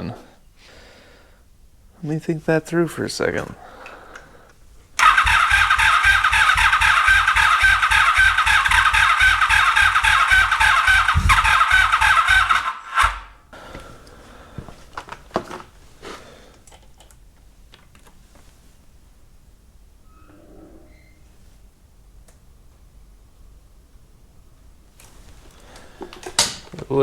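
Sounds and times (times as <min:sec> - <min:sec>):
engine starter cranking: 0:05.0 - 0:13.4.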